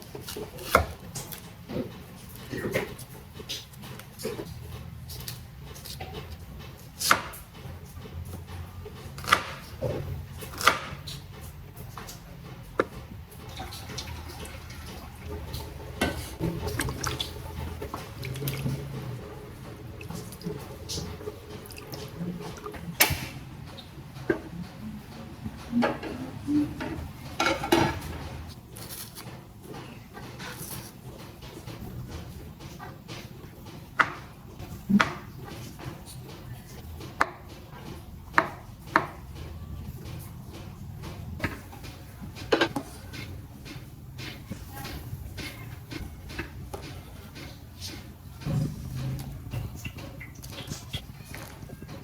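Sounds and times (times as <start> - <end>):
water dripping and running: 0.0 - 52.0.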